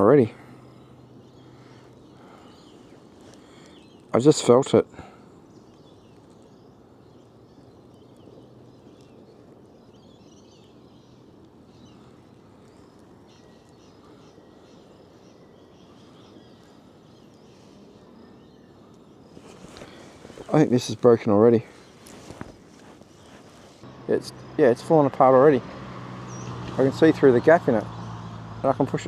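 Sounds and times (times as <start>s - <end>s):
birds chirping: 0.0s - 29.0s.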